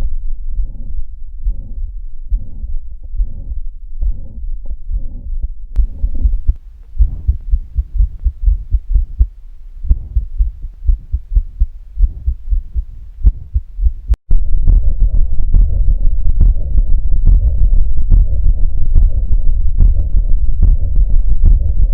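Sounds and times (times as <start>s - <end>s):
heartbeat with murmur: 0.5s - 21.9s
recording hiss: 5.8s - 14.2s.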